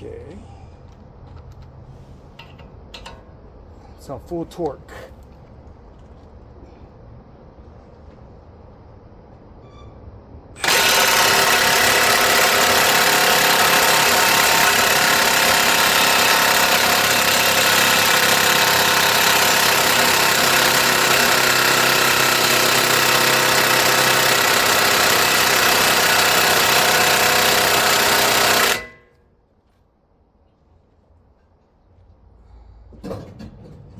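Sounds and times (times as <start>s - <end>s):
impact wrench hammering: 10.6s - 29.1s.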